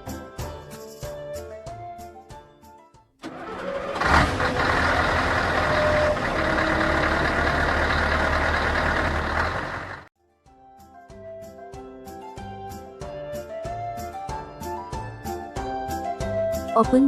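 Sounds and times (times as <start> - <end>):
vehicle engine starting and running: 3.2 - 10.1.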